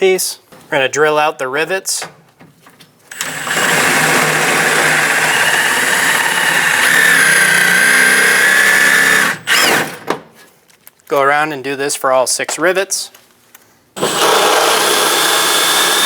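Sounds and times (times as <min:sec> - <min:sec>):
electric drill drilling: 0:03.1 - 0:09.9, 0:14.0 - 0:16.0.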